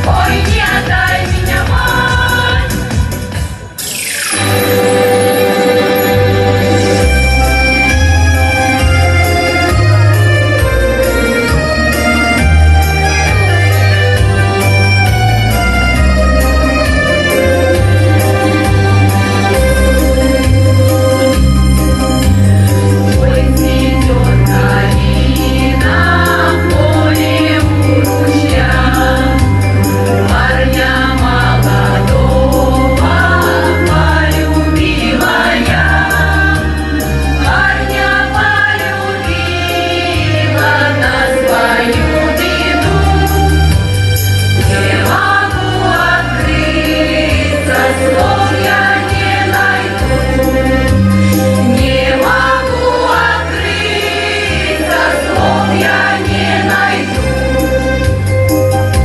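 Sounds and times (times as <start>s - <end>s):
group singing: 0.0s - 3.3s, 23.2s - 43.8s, 44.6s - 57.6s
instrumental accompaniment: 0.0s - 59.0s.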